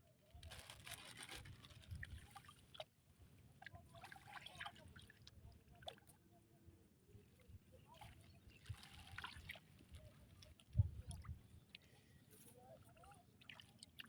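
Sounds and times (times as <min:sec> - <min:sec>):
water trickling and splashing: 0:03.6 - 0:06.1, 0:08.0 - 0:12.0, 0:12.8 - 0:14.0.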